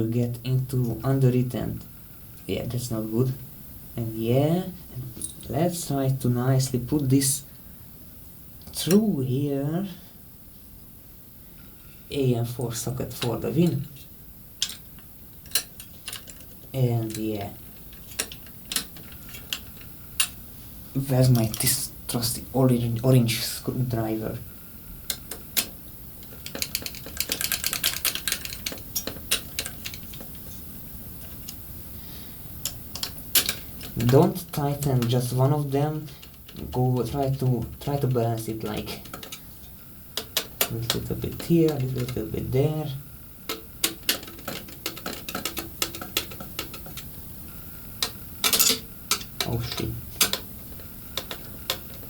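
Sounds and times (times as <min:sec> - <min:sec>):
small metal hardware clicking: 0:14.6 - 0:17.2, 0:17.8 - 0:20.4, 0:25.1 - 0:30.5, 0:32.6 - 0:34.2, 0:38.8 - 0:39.5, 0:43.5 - 0:47.1, 0:48.0 - 0:52.0.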